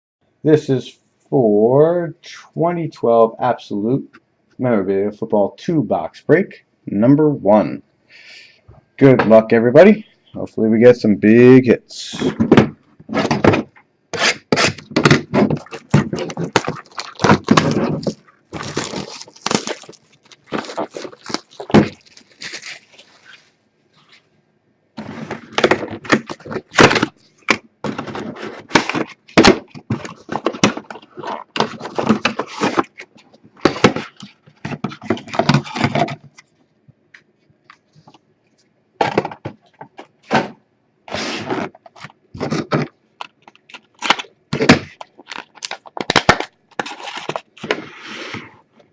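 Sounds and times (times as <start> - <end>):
cardboard being handled: 12.2 - 24.2, 25.0 - 36.4
wrapping crackling and tearing: 14.2 - 23.5, 41.2 - 48.4.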